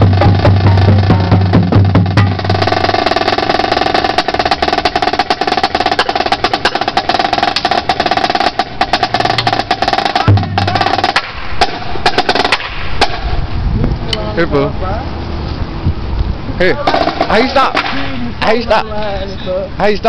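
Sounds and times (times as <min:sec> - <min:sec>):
bass drums hitting together: 0:00.0 - 0:03.1, 0:04.0 - 0:12.3
fast snare drum roll: 0:00.0 - 0:13.2, 0:16.9 - 0:17.9.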